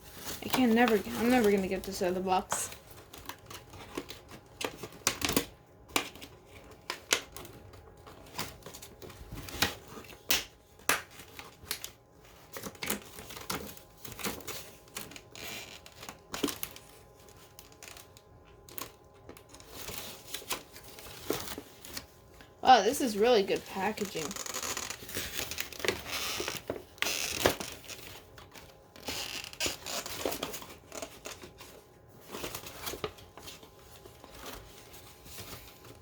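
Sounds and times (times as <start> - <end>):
packaging crinkling: 0.0 - 36.0.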